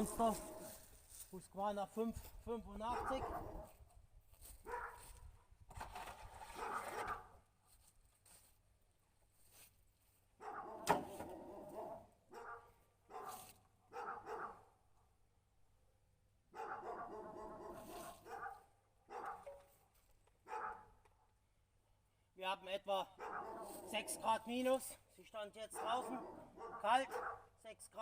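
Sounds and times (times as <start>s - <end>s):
dog barking faintly: 2.9s - 3.8s, 4.6s - 5.2s, 10.4s - 14.7s, 16.6s - 19.5s, 20.5s - 20.9s, 23.2s - 24.2s, 25.7s - 27.5s.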